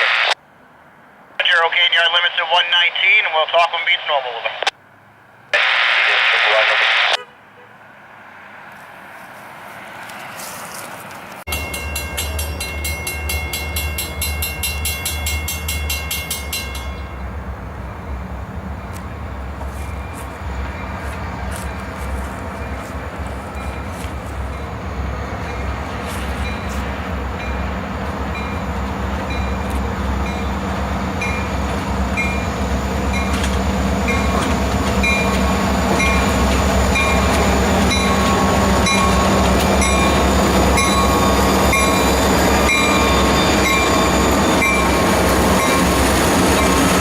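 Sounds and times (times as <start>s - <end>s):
diesel locomotive engine rumble: 1.1s - 47.0s
crossing bell ringing: 11.5s - 47.0s.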